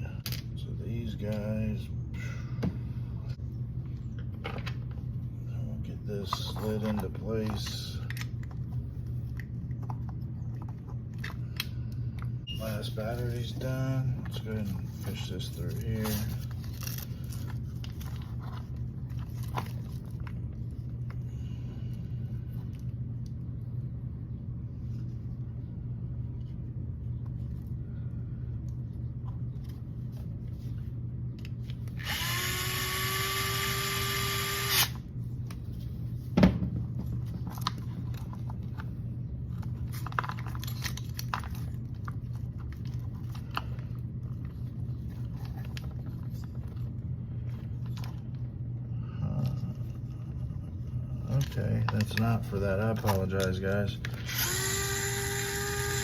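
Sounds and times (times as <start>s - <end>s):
steady low hum: 0.0s - 56.0s
cordless drill whining: 32.0s - 35.0s, 54.2s - 56.0s.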